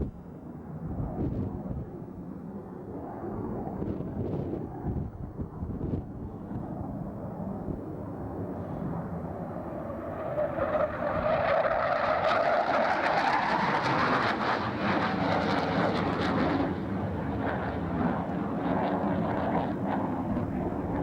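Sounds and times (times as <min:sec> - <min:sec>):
jet engines whining: 0:07.6 - 0:21.0.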